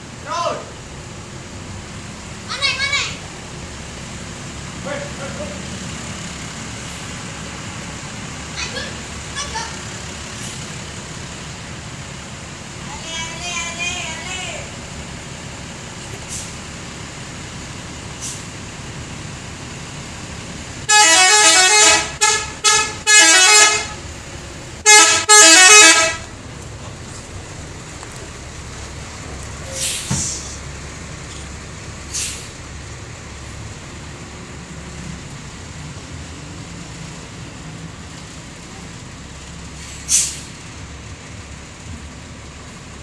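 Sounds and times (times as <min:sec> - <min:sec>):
bus engine rumble: 0:00.0 - 0:43.0
air hiss: 0:16.2 - 0:16.6, 0:18.1 - 0:18.6, 0:29.6 - 0:30.7, 0:32.1 - 0:32.6, 0:39.8 - 0:40.6
multi-tone musical air horn: 0:20.9 - 0:24.0, 0:24.8 - 0:26.3.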